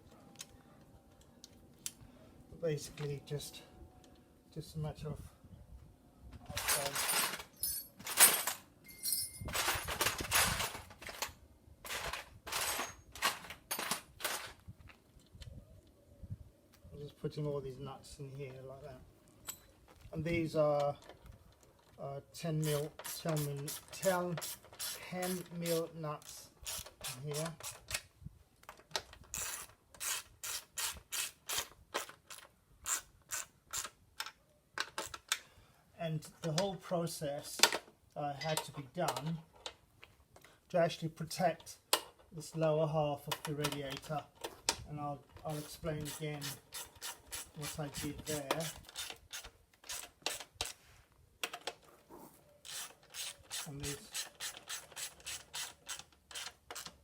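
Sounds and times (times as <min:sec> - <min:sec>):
ratchet wrench clicking: 0:22.6 - 0:25.8, 0:26.6 - 0:27.8, 0:45.5 - 0:50.4, 0:52.7 - 0:57.0.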